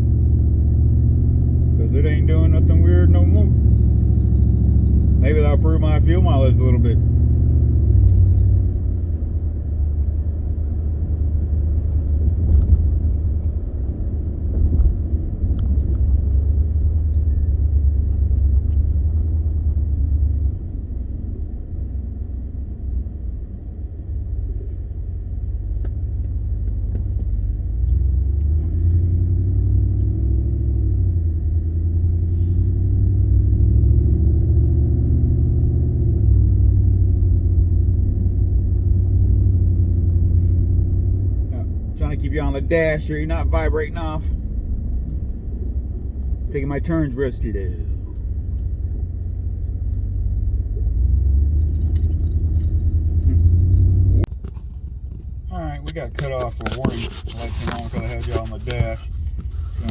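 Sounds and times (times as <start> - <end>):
truck engine and road rumble: 0.0 - 59.9.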